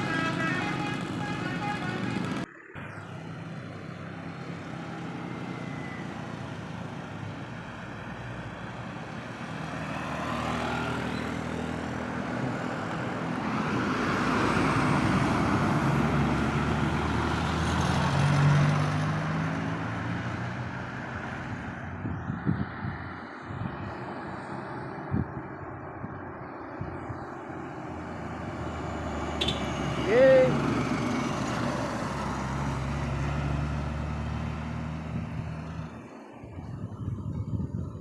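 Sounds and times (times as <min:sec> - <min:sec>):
roadside traffic: 0:00.0 - 0:38.0
heavy vehicle driving past: 0:27.0 - 0:36.0.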